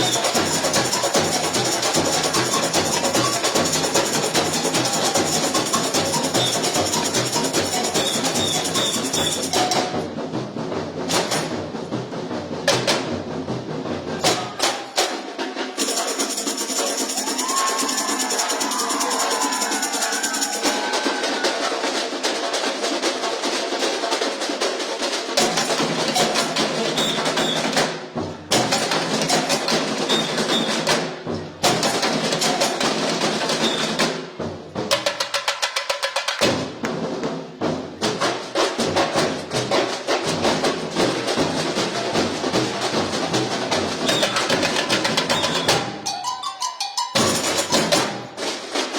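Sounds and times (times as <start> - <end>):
shakers: 0.0 - 10.1, 15.2 - 27.6, 38.8 - 48.9
samba drum corps playing: 0.0 - 46.3, 47.0 - 48.9.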